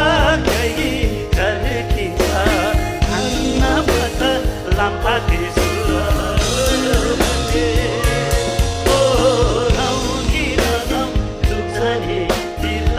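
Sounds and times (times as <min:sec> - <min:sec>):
song with singing voice and band: 0:00.0 - 0:12.9.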